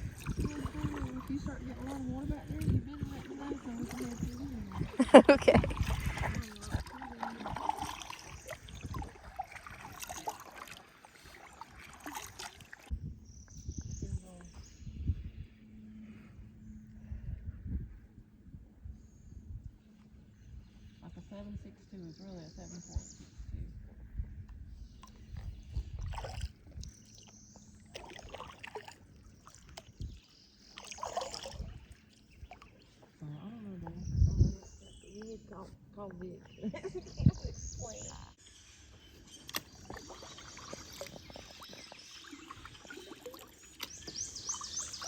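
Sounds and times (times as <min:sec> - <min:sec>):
water splashing from paddling: 0:00.0 - 0:12.9, 0:25.0 - 0:33.2, 0:39.1 - 0:45.0.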